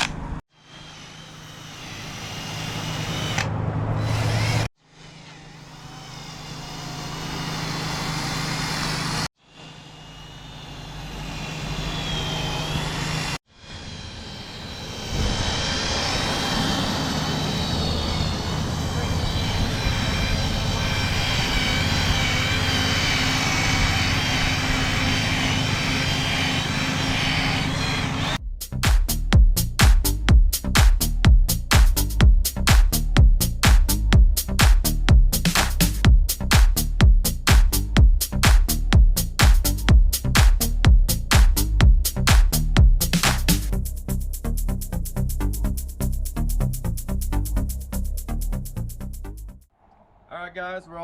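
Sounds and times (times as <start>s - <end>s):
motor humming: 0.7s - 4.7s, 14.6s - 28.4s.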